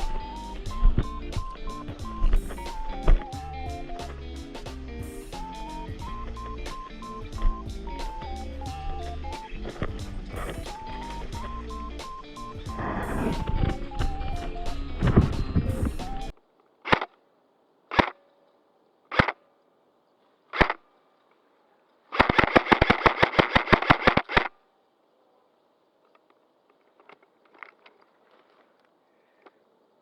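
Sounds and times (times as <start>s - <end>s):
airsoft gun firing: 16.8s - 17.2s, 17.9s - 18.2s, 19.1s - 19.4s, 20.5s - 20.8s, 22.1s - 24.5s
faint clicks: 23.5s - 30.0s.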